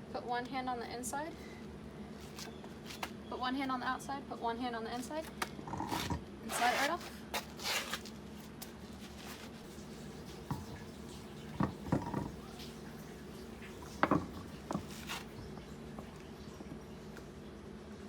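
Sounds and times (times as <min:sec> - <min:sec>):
light knocks and clicks: 0:11.5 - 0:12.5, 0:13.6 - 0:15.0.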